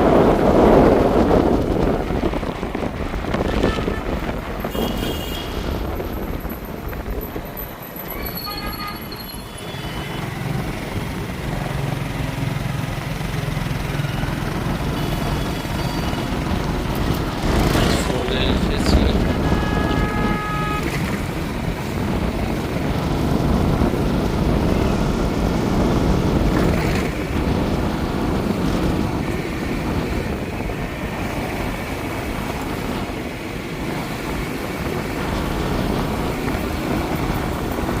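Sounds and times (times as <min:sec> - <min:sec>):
vehicle running: 0:00.0 - 0:38.0
wind on microphone: 0:00.0 - 0:38.0.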